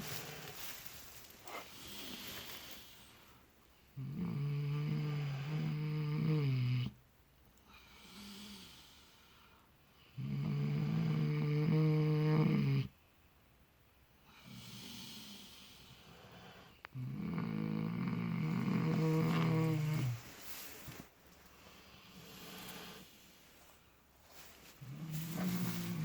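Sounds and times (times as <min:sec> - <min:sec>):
soft breathing: 0:00.0 - 0:03.9, 0:18.4 - 0:26.0
pigs snoring: 0:03.9 - 0:07.0, 0:10.1 - 0:12.9, 0:14.4 - 0:21.0, 0:21.6 - 0:23.6, 0:24.7 - 0:26.0.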